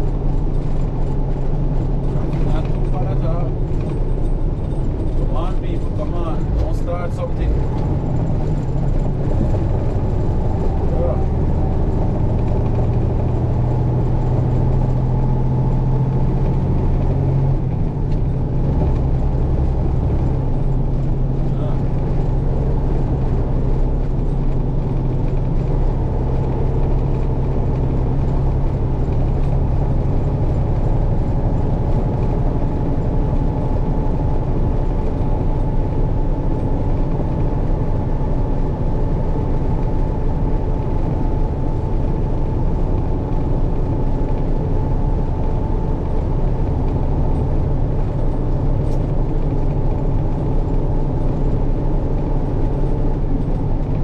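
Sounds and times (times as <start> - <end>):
road noise: 0.0 - 54.0
truck diesel engine droning: 0.0 - 54.0.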